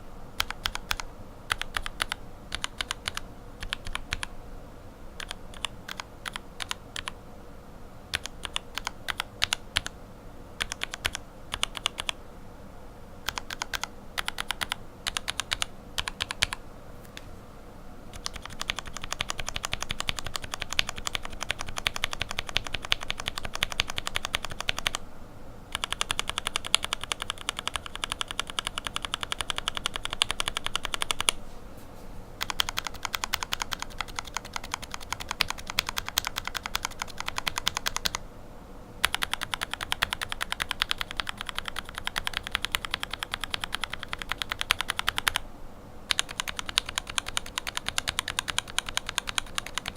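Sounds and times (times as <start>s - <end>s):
typing on mechanical keyboard: 0.4s - 4.3s, 5.2s - 7.2s, 8.1s - 9.9s, 10.6s - 12.2s, 13.2s - 16.6s, 18.1s - 25.0s, 25.7s - 31.4s, 32.4s - 38.2s, 39.0s - 45.4s, 46.1s - 49.9s.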